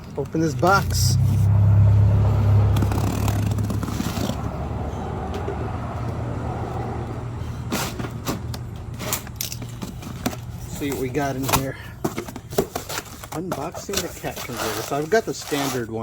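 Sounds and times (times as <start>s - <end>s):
vehicle engine drone: 0.0s - 10.9s.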